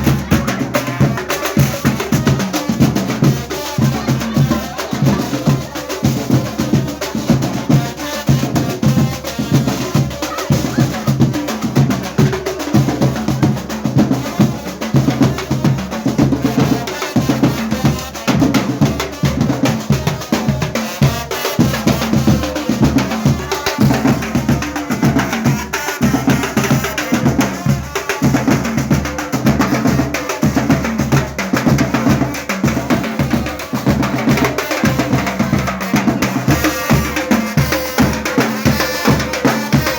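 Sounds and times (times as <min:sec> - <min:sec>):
loud music with drum beat: 0:00.0 - 0:39.9.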